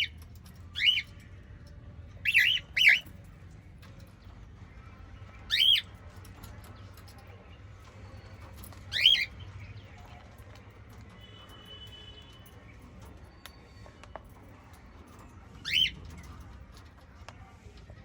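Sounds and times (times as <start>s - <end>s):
cockatiel squawking: 0.8s - 1.1s, 2.2s - 3.0s, 5.5s - 5.9s, 15.6s - 16.0s.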